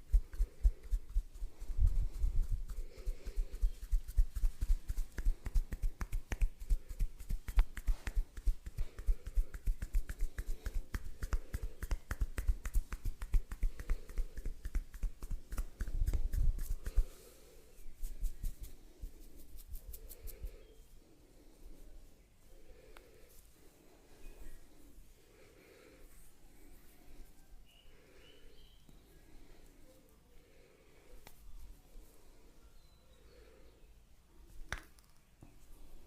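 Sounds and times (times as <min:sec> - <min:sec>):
hands tapping on head: 0:02.6 - 0:17.2.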